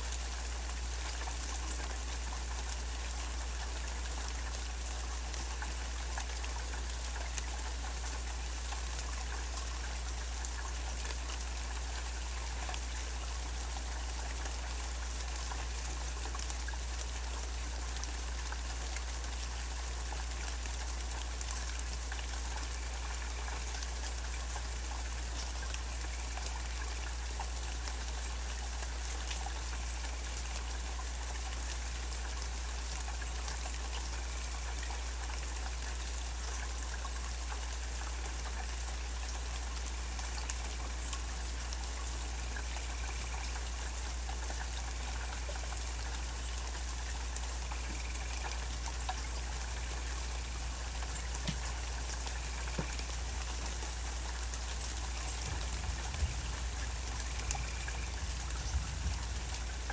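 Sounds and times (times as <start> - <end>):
steady rain falling: 0.0 - 59.9.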